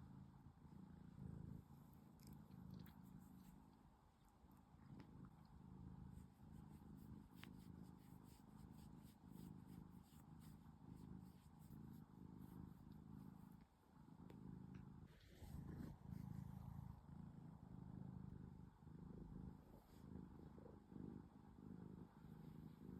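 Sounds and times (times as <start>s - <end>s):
cat purring: 0.0s - 22.9s.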